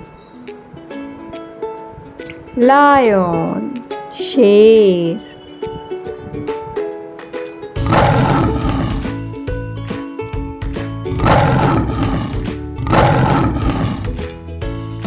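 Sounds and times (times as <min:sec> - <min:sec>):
cheerful plucked-string music: 0:00.0 - 0:07.8, 0:09.0 - 0:11.2
lion roaring: 0:07.8 - 0:09.2, 0:11.1 - 0:14.2.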